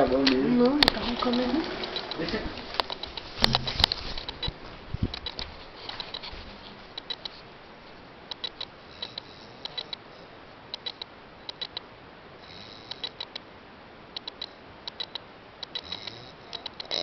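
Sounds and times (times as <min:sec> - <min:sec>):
sharp high clicks of sleeping animal: 0:00.2 - 0:06.3, 0:06.9 - 0:07.4, 0:08.3 - 0:13.5, 0:14.2 - 0:17.0.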